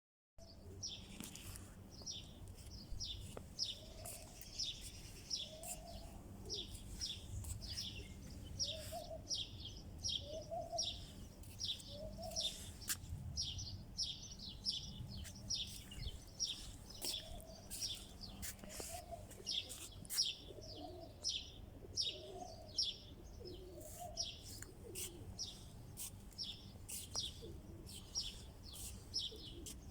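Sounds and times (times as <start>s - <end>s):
small birds chirping: 0.4s - 29.9s
bird cooing: 5.3s - 9.4s, 10.1s - 11.0s, 11.8s - 12.6s, 18.6s - 25.6s, 26.5s - 29.8s.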